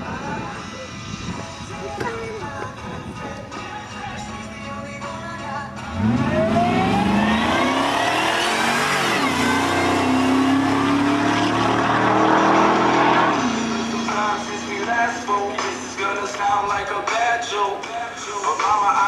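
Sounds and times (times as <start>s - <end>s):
car engine accelerating: 5.8s - 16.6s.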